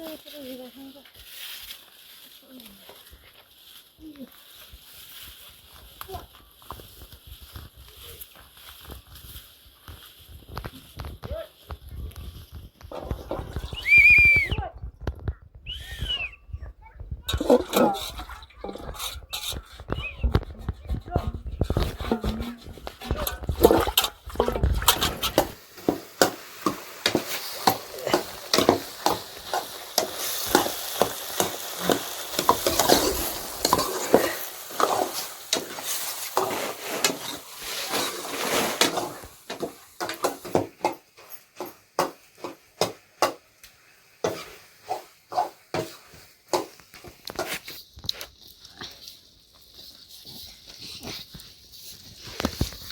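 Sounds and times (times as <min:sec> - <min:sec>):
utensil knocking and scraping pan: 0:17.3 - 0:43.5, 0:44.2 - 0:47.8
food sizzling: 0:23.2 - 0:47.9.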